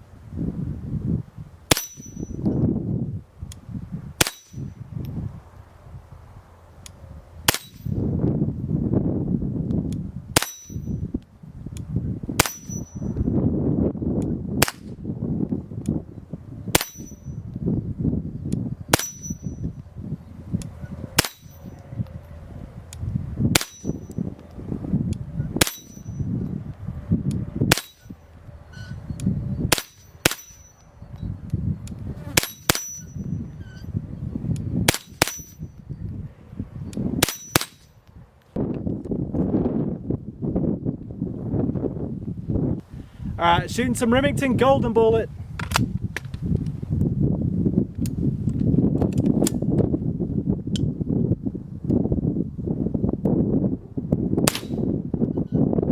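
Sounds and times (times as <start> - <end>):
wind on microphone: 0.0 - 55.9
high ring: 1.7 - 2.5, 10.4 - 11.1, 12.4 - 13.3, 16.8 - 17.5, 19.0 - 19.8, 25.6 - 26.4, 29.8 - 31.0, 32.4 - 33.9, 35.1 - 36.0.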